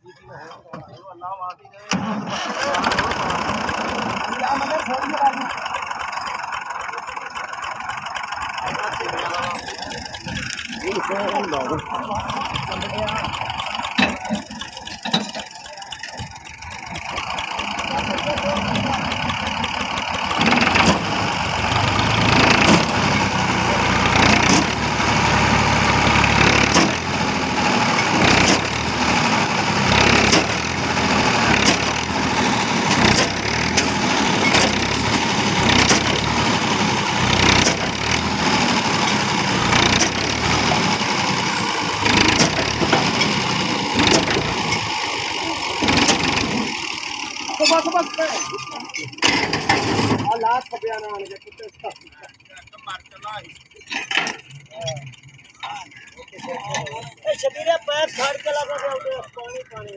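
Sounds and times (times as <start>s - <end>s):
tractor engine running: 0.0s - 59.9s
knocks and clatter: 12.2s - 45.2s, 45.8s - 46.8s, 49.0s - 50.5s.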